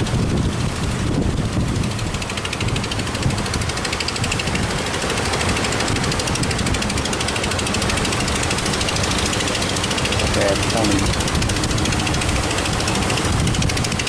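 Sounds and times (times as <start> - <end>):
fast even rattling pulse: 0.0 - 14.0
strong wind: 0.0 - 14.0
surf at the shore: 0.0 - 14.0.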